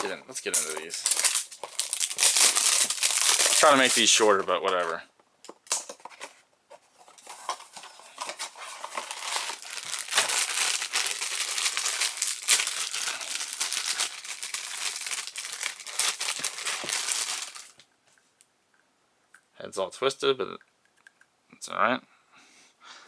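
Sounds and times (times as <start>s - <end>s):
packaging crinkling: 0.0s - 6.4s, 7.0s - 17.8s.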